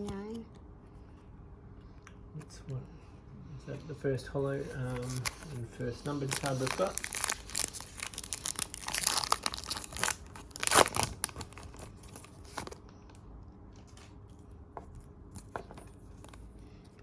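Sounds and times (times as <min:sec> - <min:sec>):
plastic wrapper tearing and crinkling: 0:04.8 - 0:12.8.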